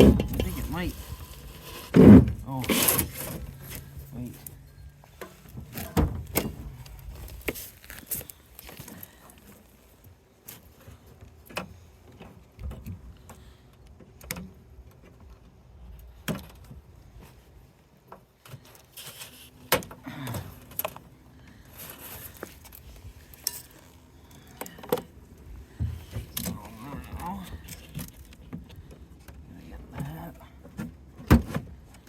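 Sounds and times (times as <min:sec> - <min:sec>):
metal clanks and knocks: 0:00.0 - 0:01.2.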